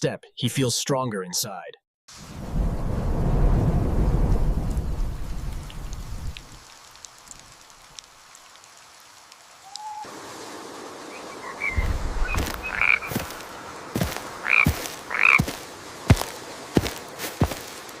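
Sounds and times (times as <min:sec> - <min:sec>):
frogs croaking: 0:11.0 - 0:17.6.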